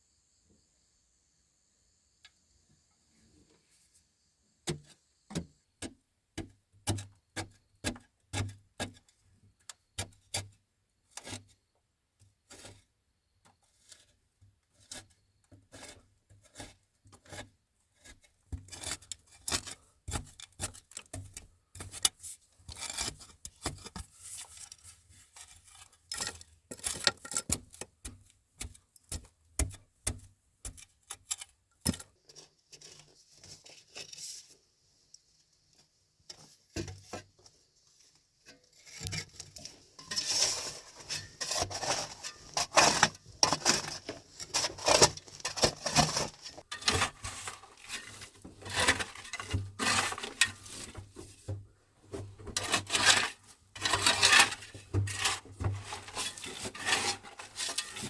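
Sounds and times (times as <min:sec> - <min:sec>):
sharp knocks and clicks: 0:26.7 - 0:32.1
scraping and rubbing: 0:38.7 - 0:51.6, 0:52.2 - 0:58.0.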